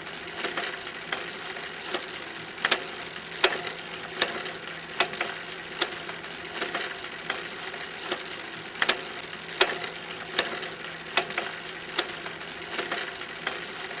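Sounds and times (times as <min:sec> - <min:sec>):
sharp mechanical click: 0:00.1 - 0:14.0.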